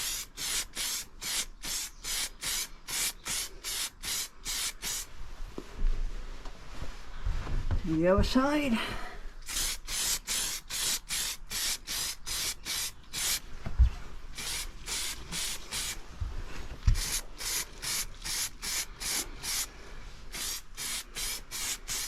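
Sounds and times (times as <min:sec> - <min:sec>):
aerosol spray bursts: 0:00.0 - 0:05.1, 0:09.4 - 0:13.4, 0:14.4 - 0:16.0, 0:16.9 - 0:19.7, 0:20.3 - 0:22.0.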